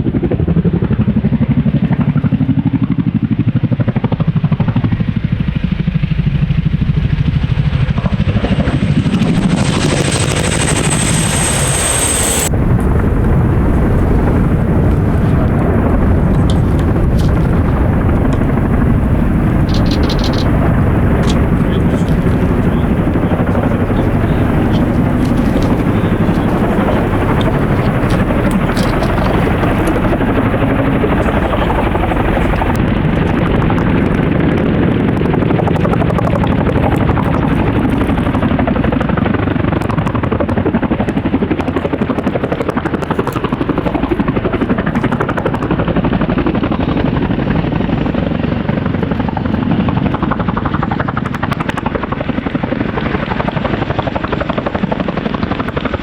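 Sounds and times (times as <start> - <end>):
helicopter turbine noise: 0.0 - 56.0
helicopter rotor thump: 7.1 - 47.7.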